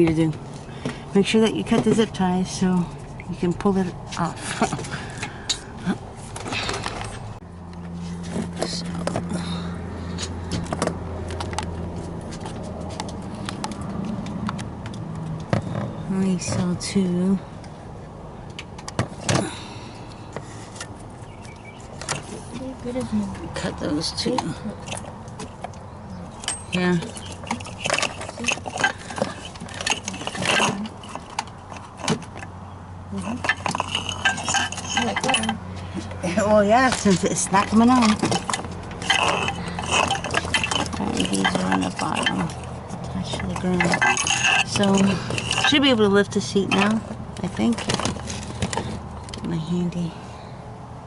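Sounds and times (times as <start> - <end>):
light metallic rattling: 20.7 - 49.5.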